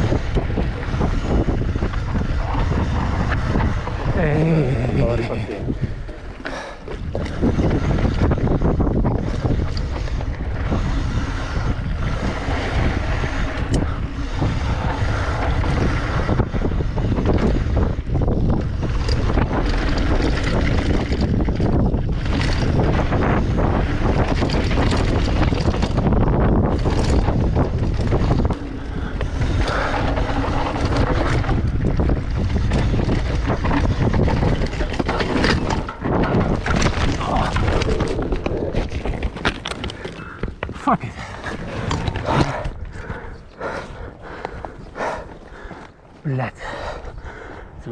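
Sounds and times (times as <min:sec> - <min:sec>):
low rumble: 0:00.0 - 0:46.0
wind buffeting microphone: 0:00.0 - 0:47.9
knocks and rattles: 0:12.1 - 0:43.1.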